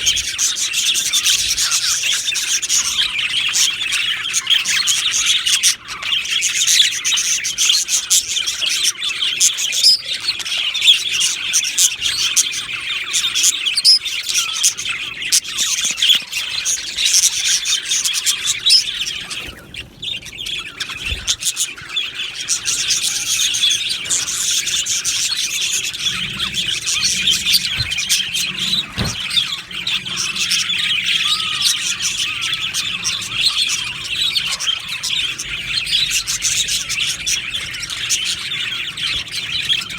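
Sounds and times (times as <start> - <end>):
flock of budgerigars chattering: 0.0 - 39.9.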